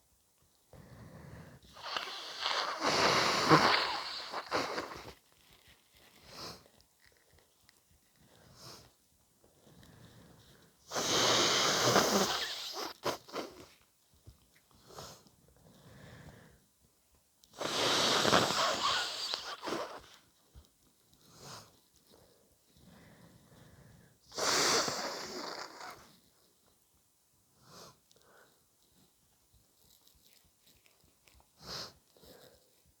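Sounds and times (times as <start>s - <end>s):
person blowing nose: 1.8s - 5.2s, 10.9s - 13.7s, 17.6s - 20.2s, 24.3s - 26.1s
short nasal sounds: 1.8s - 5.2s, 10.9s - 13.7s, 17.6s - 20.2s, 24.4s - 26.1s.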